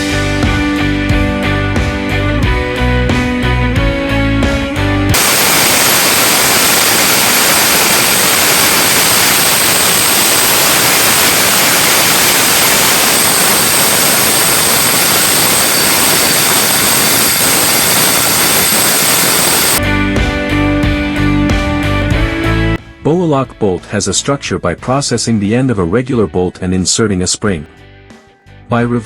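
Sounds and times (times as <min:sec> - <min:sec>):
rushing machine noise: 0:05.1 - 0:19.8
thin high whines: 0:05.2 - 0:19.8.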